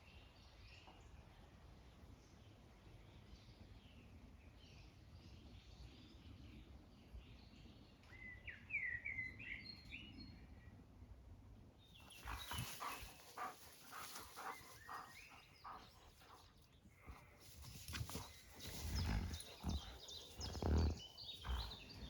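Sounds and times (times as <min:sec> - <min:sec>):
faint birdsong warbling: 0:11.9 - 0:22.0.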